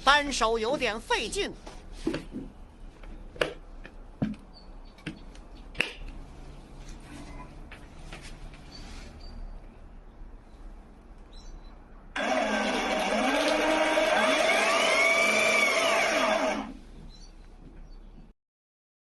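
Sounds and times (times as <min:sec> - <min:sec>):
pressure washer motor whining: 0:12.2 - 0:16.8.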